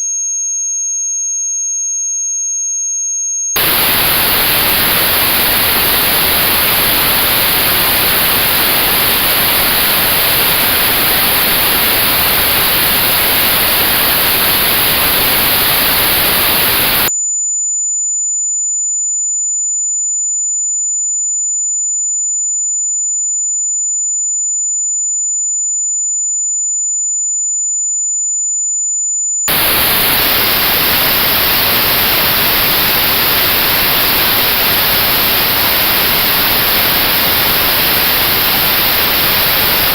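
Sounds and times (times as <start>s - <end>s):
high-pitched pure tone: 3.6s - 17.1s, 29.5s - 39.9s
notched white noise hiss: 3.6s - 17.1s, 29.5s - 39.9s.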